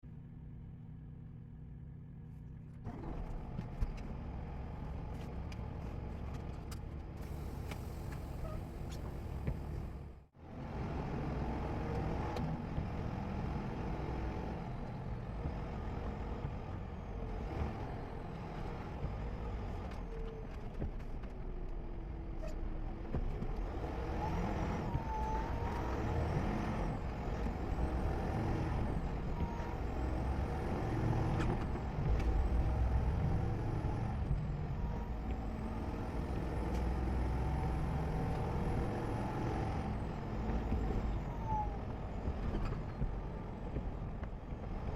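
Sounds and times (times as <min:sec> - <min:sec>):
engine and tyre rumble: 0:00.0 - 0:44.9.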